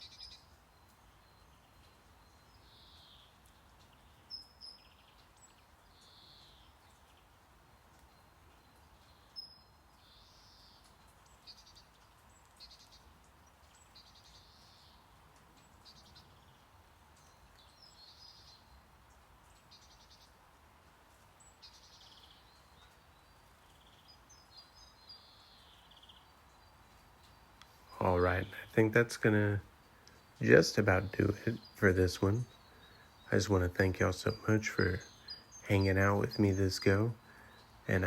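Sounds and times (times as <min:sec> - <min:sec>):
low steady hiss: 0:00.0 - 0:38.0
bird chirps and trills: 0:21.4 - 0:38.0.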